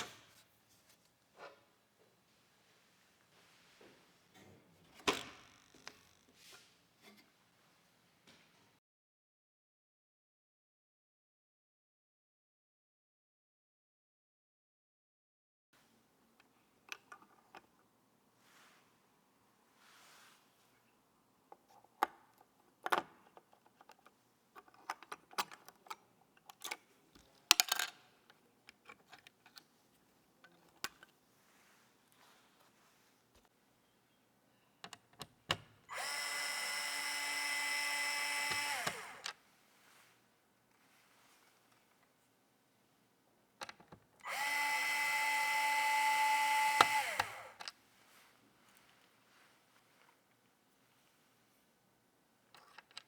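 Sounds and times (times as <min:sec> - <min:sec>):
electric screwdriver motor whine: 0:35.9 - 0:39.3, 0:44.2 - 0:47.6.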